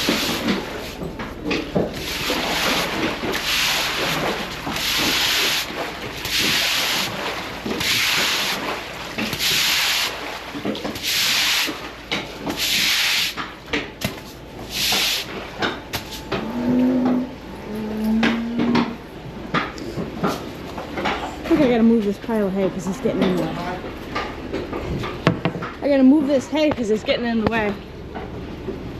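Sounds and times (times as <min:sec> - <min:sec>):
broom sweeping water: 0:00.0 - 0:01.2, 0:01.9 - 0:16.3.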